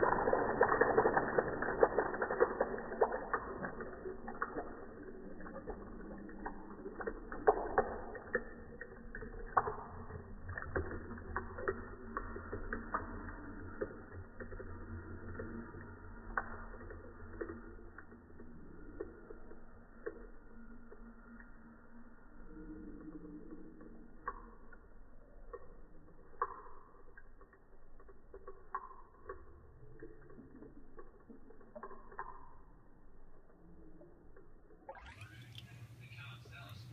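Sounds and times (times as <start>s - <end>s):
running water splashing: 0.0s - 19.0s
water drips and plops: 0.0s - 36.9s.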